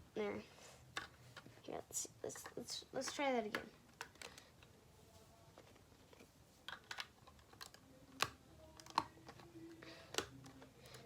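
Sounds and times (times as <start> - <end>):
plastic toy bricks clicking: 6.7 - 11.0.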